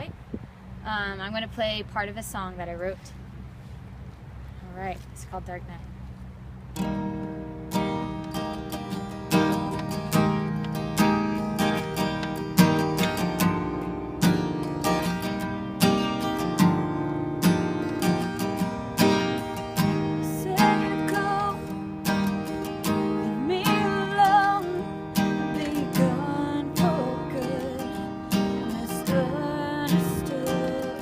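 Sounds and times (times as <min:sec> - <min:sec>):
acoustic guitar strumming chords: 0:06.8 - 0:31.0.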